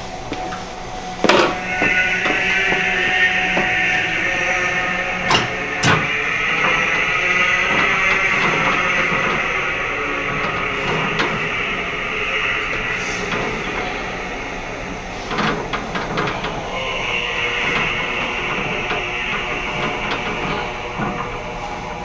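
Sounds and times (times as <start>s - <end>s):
choral chant through speaker: 0.0s - 22.0s.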